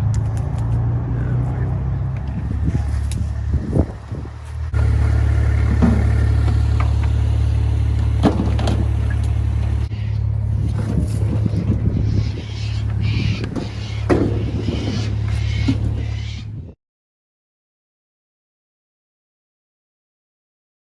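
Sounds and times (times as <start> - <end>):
vehicle engine humming: 0.0 - 16.6.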